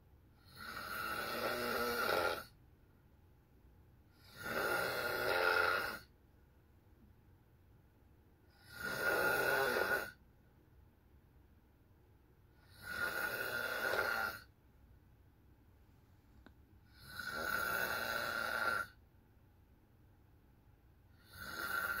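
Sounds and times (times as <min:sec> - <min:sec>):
person snoring: 0:00.4 - 0:02.6, 0:04.1 - 0:06.1, 0:08.5 - 0:10.2, 0:12.6 - 0:14.5, 0:16.9 - 0:19.0, 0:21.1 - 0:22.0.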